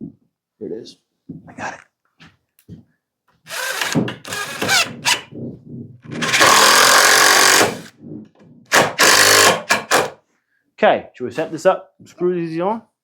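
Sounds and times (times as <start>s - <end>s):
power drill driving screw into wood: 3.5s - 5.3s, 6.2s - 7.9s, 8.7s - 10.2s.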